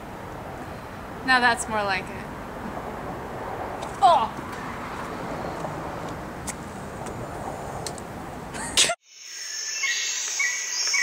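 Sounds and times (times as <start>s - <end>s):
outdoor background noise: 0.0s - 11.0s
birds and insects chirping: 2.3s - 11.0s.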